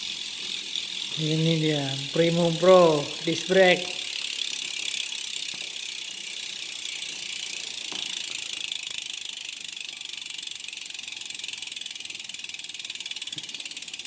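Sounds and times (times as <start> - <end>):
bicycle freehub clicking: 0.0 - 14.0.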